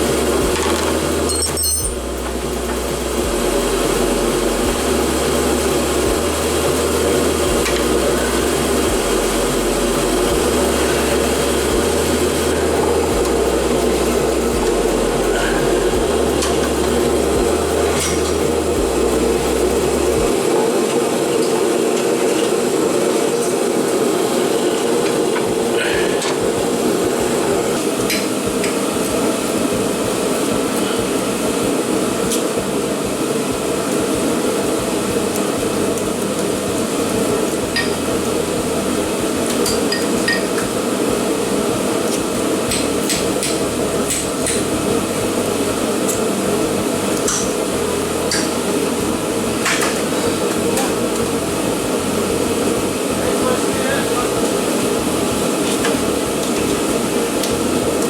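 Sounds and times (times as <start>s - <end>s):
heater drone: 0.0s - 58.0s
hand tools clinking on metal: 1.3s - 2.0s.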